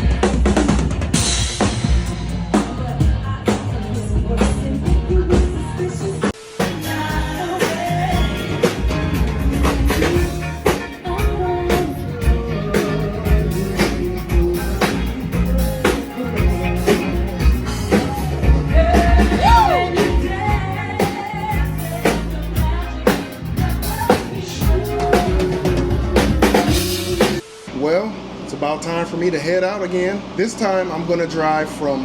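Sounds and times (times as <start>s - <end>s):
rock band playing: 0.0s - 27.9s
person singing: 2.2s - 27.5s.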